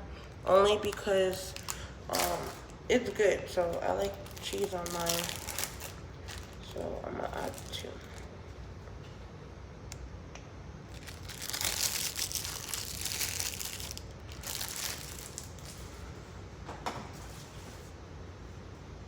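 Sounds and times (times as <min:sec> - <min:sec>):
plastic packaging crinkling: 0:00.4 - 0:08.3, 0:10.9 - 0:16.0.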